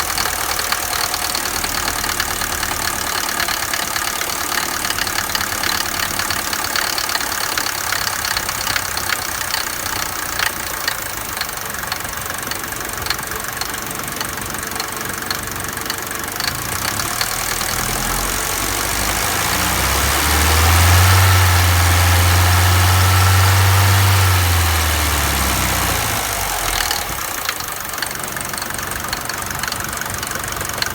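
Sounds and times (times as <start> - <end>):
diesel engine idling and revving: 0.0 - 30.9
engine knocking: 0.0 - 30.9.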